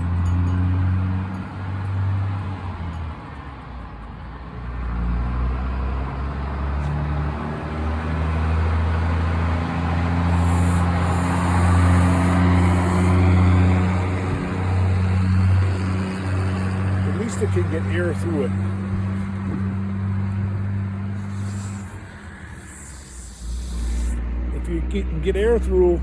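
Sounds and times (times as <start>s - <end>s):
low machine hum: 2.2s - 26.0s
compressed air hisses: 9.2s - 15.4s, 21.2s - 24.4s.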